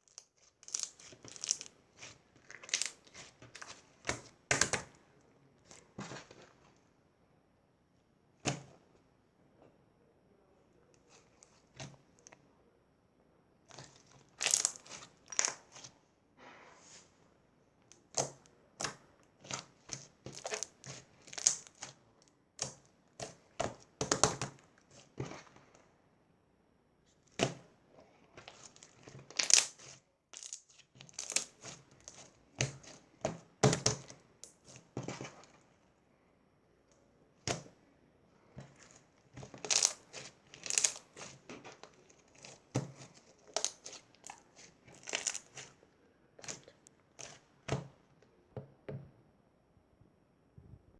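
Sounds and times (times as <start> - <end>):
crinkling and rustling: 0.0 - 5.0, 5.6 - 6.9, 13.7 - 16.0, 18.8 - 25.9, 27.1 - 35.9, 38.4 - 48.0.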